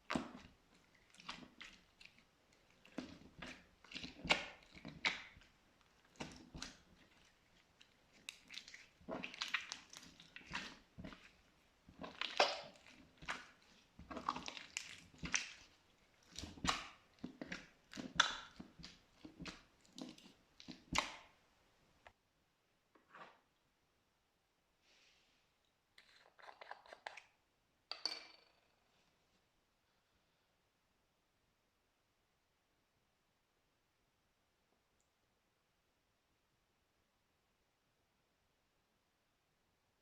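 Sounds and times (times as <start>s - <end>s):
slime squelching and popping: 0.0s - 22.1s.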